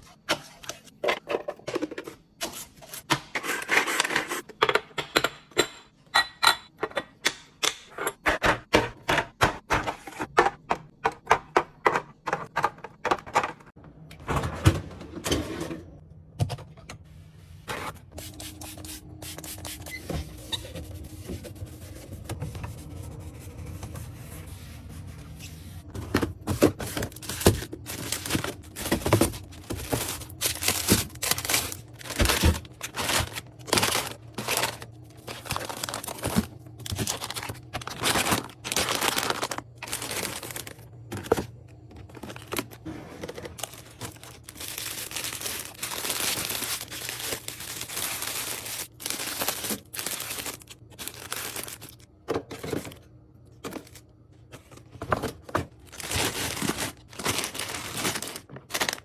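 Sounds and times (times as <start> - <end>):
plastic packaging crinkling: 26.4 - 53.0, 55.1 - 59.0.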